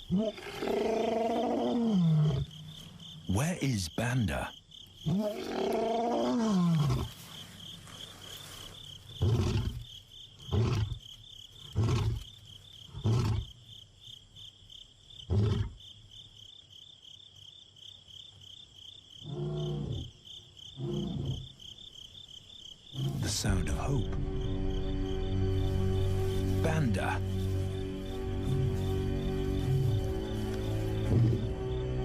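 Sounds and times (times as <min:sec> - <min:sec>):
lion roaring and grunting: 0:00.0 - 0:02.5, 0:05.0 - 0:07.2, 0:09.2 - 0:09.8, 0:10.5 - 0:11.0, 0:11.7 - 0:12.2, 0:19.2 - 0:20.1, 0:20.8 - 0:21.5, 0:22.9 - 0:23.6
high insect trill: 0:00.0 - 0:32.0.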